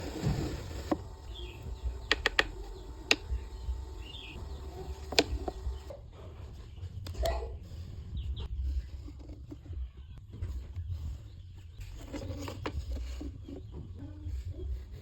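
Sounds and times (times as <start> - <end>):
low background rumble: 0.0 - 11.8
tools tapping and clicking on workbench: 0.6 - 5.9.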